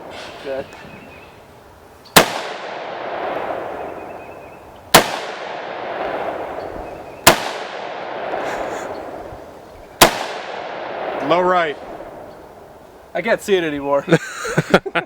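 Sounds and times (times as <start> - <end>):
rifle shots with echo: 2.2 - 9.2, 10.0 - 12.7.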